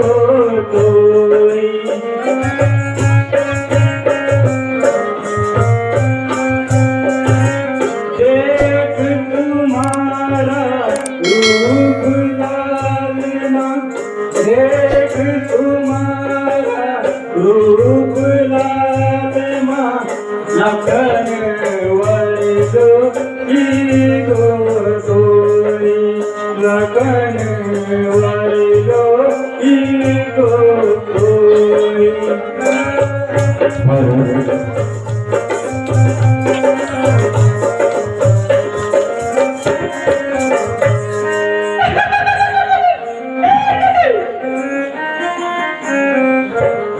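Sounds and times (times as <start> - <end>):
percussion: 0.0 - 46.9
wavering sliding melody: 11.3 - 13.0.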